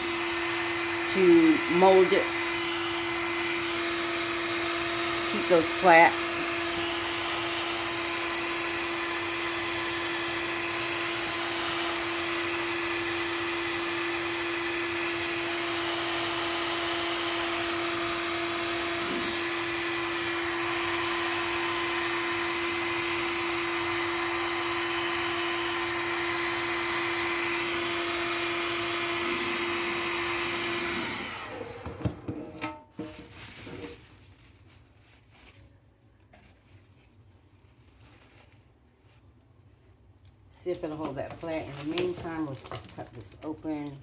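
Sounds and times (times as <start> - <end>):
heat gun blowing: 0.0 - 33.9.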